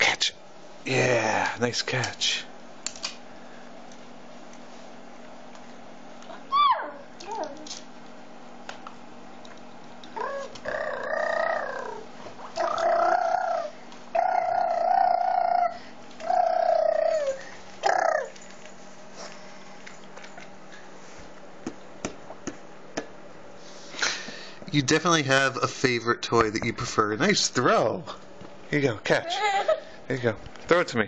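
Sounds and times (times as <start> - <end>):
baby squealing: 6.5 - 7.0, 10.2 - 12.0.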